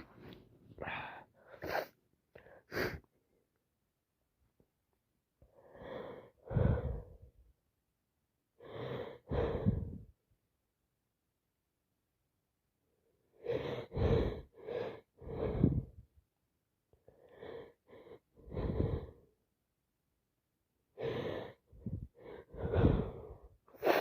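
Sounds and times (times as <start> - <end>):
woman gasping: 21.8 - 24.0.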